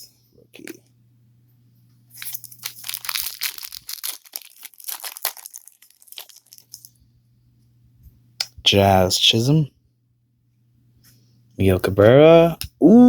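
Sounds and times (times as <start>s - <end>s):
wrapper tearing and crinkling: 2.2s - 6.9s.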